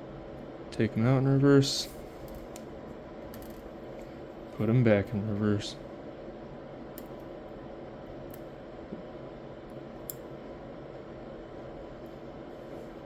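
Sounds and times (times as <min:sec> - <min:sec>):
low background hum: 0:00.0 - 0:13.0
small lock parts clicking: 0:03.3 - 0:03.6.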